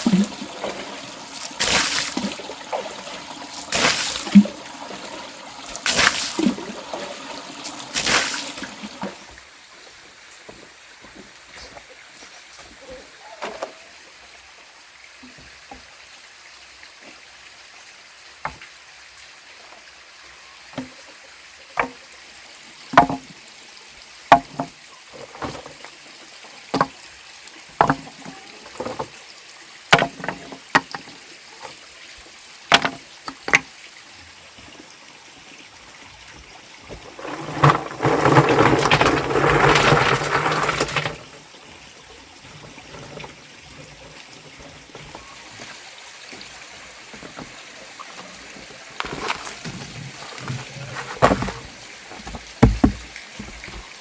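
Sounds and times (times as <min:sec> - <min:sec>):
wet material pouring: 0:00.0 - 0:09.2, 0:36.8 - 0:41.4, 0:48.9 - 0:53.9
sharp knocks and scrapes: 0:36.9 - 0:41.4, 0:49.0 - 0:53.9.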